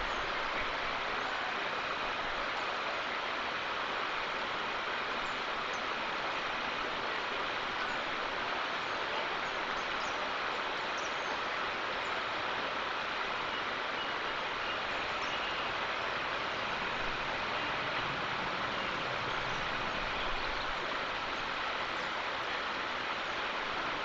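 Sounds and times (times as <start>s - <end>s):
steady outdoor hiss: 0.0s - 24.0s.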